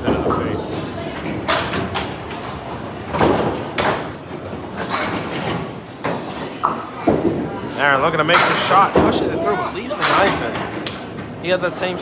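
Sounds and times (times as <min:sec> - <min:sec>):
bowling balls rumbling down lanes: 0:00.0 - 0:12.0
balls crashing into wooden pins: 0:08.3 - 0:11.3.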